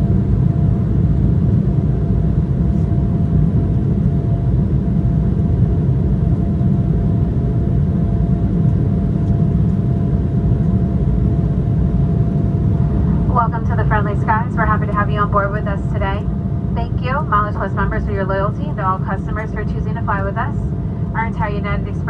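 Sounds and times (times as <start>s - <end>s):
faint steady whine: 0.0s - 22.0s
jet engines rumbling: 0.0s - 22.0s.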